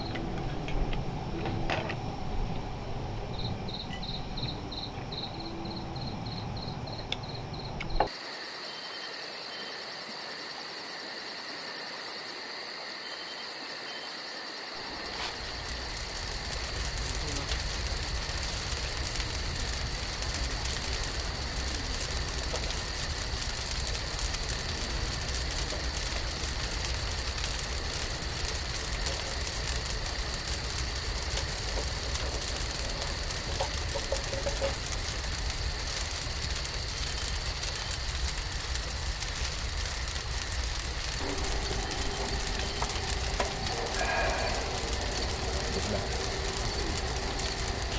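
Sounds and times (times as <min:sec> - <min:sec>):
food sizzling over campfire: 0:00.0 - 0:47.9
low rumble: 0:38.6 - 0:47.9.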